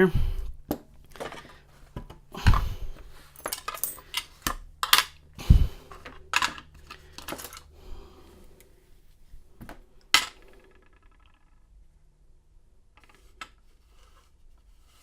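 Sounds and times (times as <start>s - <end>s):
metal clicks and clinks: 3.3s - 5.2s.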